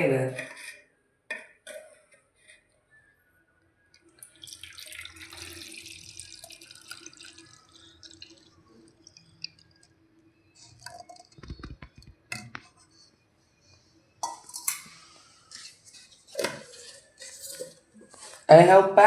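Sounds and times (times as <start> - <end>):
liquid pouring and splashing: 4.1 - 12.0.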